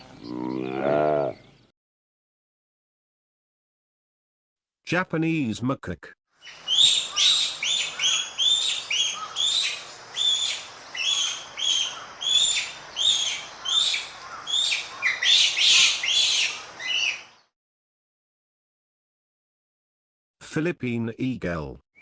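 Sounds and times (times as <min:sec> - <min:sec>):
macaque chirping calls: 0:06.4 - 0:17.2.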